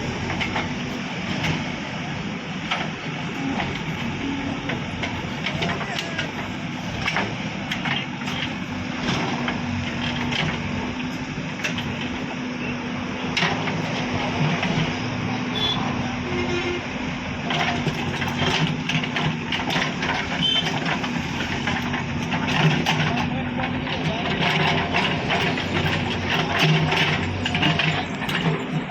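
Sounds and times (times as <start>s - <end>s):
diesel engine running: 0.0s - 28.9s
short knocks and clatter: 17.4s - 28.9s.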